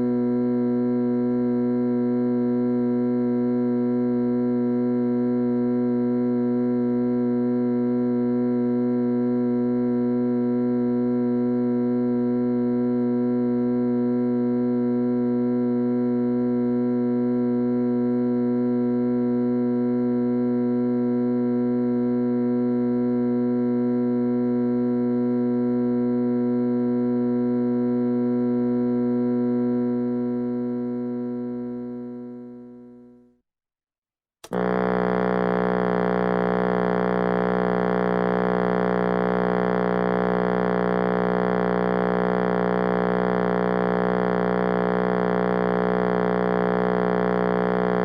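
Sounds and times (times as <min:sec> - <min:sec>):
electric buzzer buzzing: 0:34.4 - 0:48.0.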